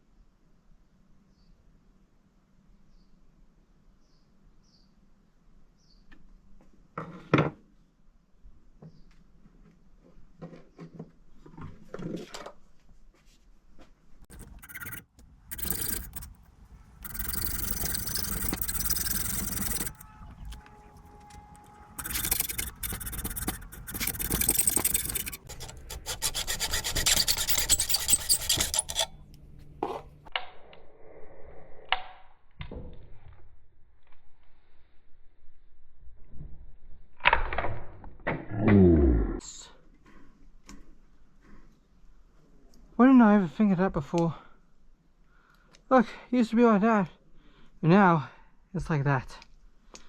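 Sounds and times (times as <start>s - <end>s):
hand file rasping: 14.3s - 29.2s.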